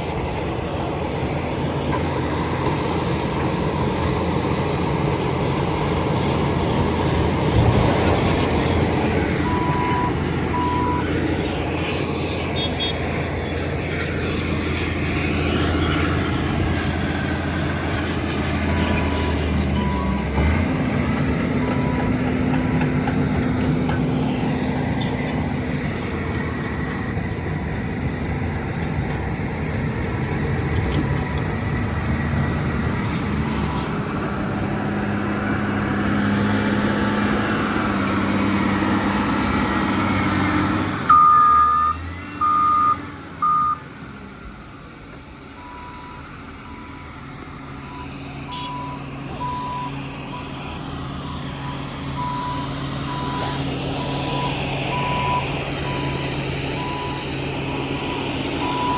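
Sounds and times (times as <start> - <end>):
heavy diesel engines under load: 0.0 - 58.9
reversing alarm beeping: 9.4 - 11.0, 18.7 - 20.4, 41.0 - 43.9, 47.8 - 50.6, 51.2 - 58.9.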